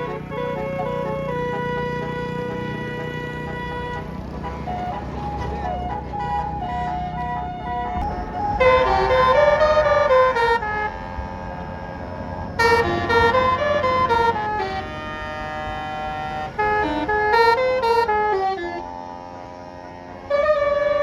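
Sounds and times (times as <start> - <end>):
bus horn playing a melody: 0.0 - 21.0
traffic rumble: 0.0 - 21.0.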